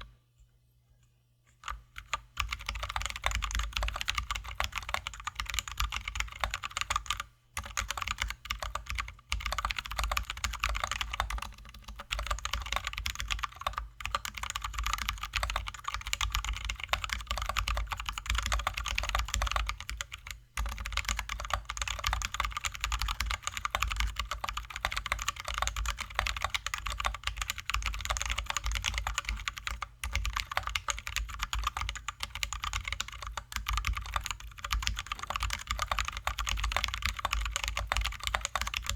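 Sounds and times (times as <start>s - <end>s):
mechanical keyboard typing: 1.6s - 38.9s.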